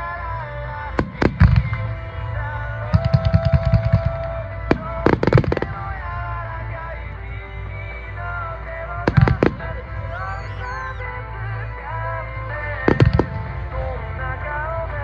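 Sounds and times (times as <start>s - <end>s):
music: 0.0s - 15.0s
rapid firework pops: 1.0s - 1.9s, 3.0s - 5.8s, 12.9s - 13.4s
fireworks booming: 1.0s - 2.0s, 2.8s - 6.2s, 9.1s - 10.2s, 12.9s - 13.8s.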